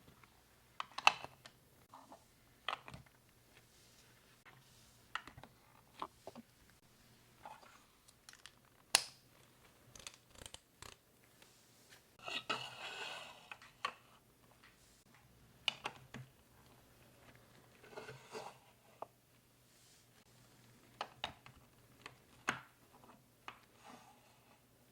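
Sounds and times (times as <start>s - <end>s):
plastic pieces clicking: 8.1s - 9.2s.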